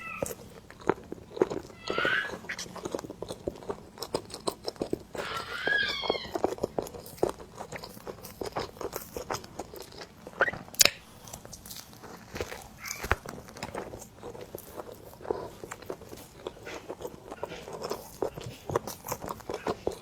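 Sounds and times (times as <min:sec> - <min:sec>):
cat meowing: 0:00.0 - 0:00.4, 0:01.6 - 0:02.6, 0:05.2 - 0:06.5
chewing soft bread: 0:00.0 - 0:20.0.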